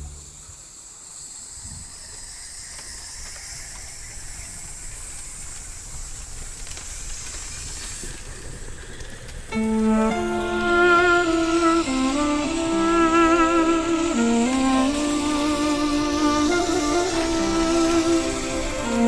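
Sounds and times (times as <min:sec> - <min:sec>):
waterfall rushing: 0:09.6 - 0:19.0.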